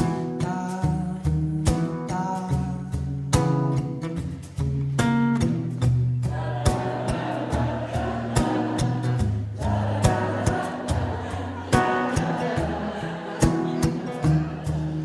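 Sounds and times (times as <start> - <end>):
bass guitar: 0.0 - 15.0
drums: 0.0 - 15.0
guitar playing: 0.0 - 15.0
voices singing: 6.3 - 15.0.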